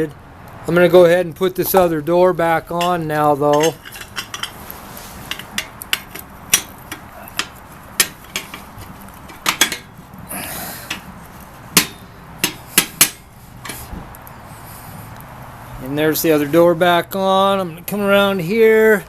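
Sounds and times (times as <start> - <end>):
metal clanks and knocks: 2.7 - 4.6, 5.3 - 10.0, 10.8 - 11.1, 11.7 - 14.1
metal scraping: 2.7 - 14.1.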